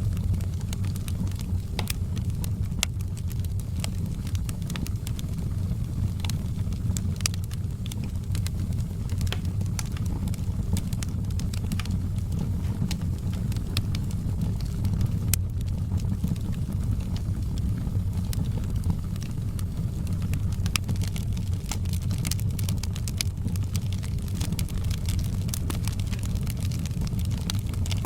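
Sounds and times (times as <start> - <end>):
wood fire crackling: 0.0 - 28.0.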